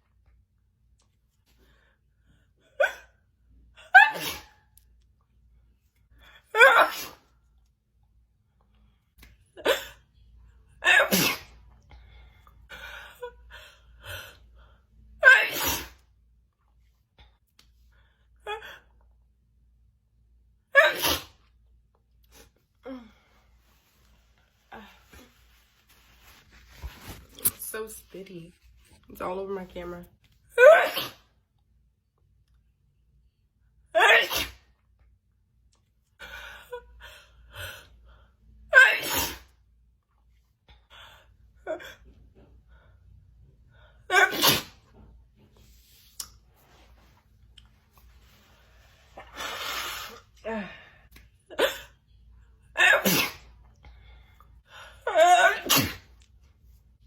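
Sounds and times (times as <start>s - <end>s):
woman sneezing: 4.0s - 4.6s, 6.6s - 7.2s, 10.8s - 11.6s, 15.2s - 16.0s, 20.8s - 21.4s, 30.6s - 31.3s, 34.0s - 34.6s, 38.7s - 39.5s, 44.1s - 44.8s, 52.8s - 53.5s, 55.3s - 56.1s.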